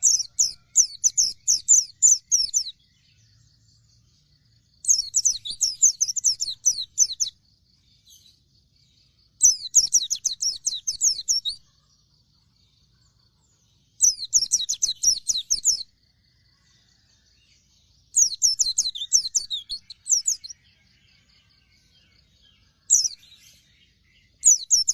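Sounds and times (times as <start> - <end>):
bird twittering: 0.0 - 3.4, 4.8 - 7.4, 9.3 - 11.8, 14.0 - 15.9, 18.1 - 20.6, 21.2 - 24.9.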